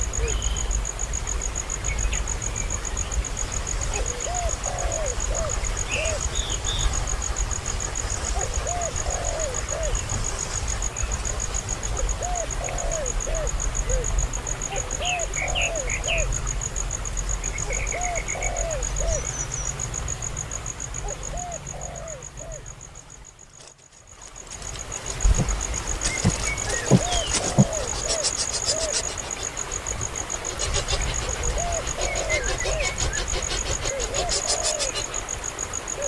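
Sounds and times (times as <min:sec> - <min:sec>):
pulsing insect trill: 0:00.0 - 0:36.0
animal calling: 0:26.0 - 0:35.2.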